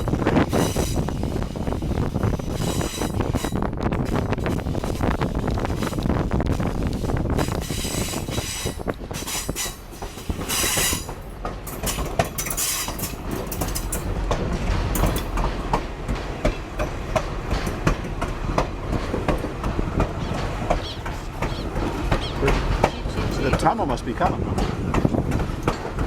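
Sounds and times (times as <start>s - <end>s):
train rumbling on track: 0.0s - 26.0s
wheels clacking over rail joints: 0.0s - 26.0s
high squeal of train wheels: 0.5s - 1.4s, 2.2s - 3.6s, 7.4s - 11.2s, 11.8s - 14.0s, 20.1s - 23.5s.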